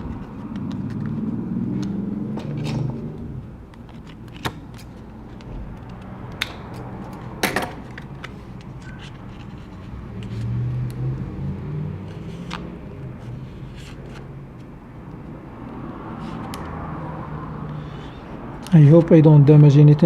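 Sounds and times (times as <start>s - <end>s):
laptop parts clicking: 0.0s - 9.6s.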